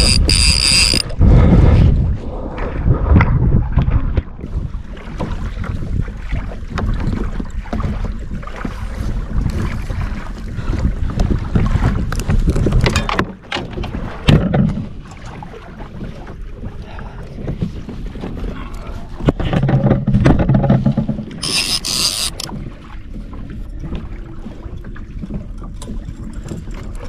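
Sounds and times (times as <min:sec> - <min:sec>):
water sounds: 0:00.0 - 0:27.0
wind buffeting microphone: 0:00.0 - 0:27.0
handling knocks and clicks: 0:12.8 - 0:14.8, 0:19.3 - 0:22.5.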